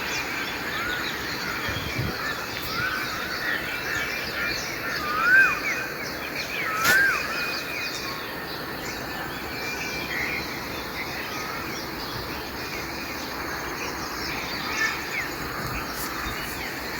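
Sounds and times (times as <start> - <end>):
birds chirping and calling: 0.0 - 16.9
whistled bird notes: 0.8 - 8.2
background hiss: 6.2 - 16.9.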